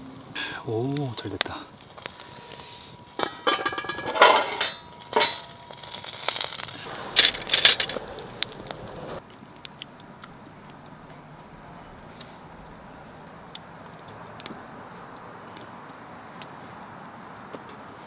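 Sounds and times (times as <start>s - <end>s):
cookware clattering: 3.2s - 8.6s.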